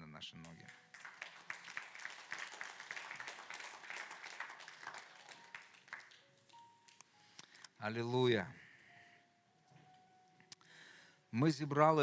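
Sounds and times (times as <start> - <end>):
congregation clapping: 0.4 - 7.7.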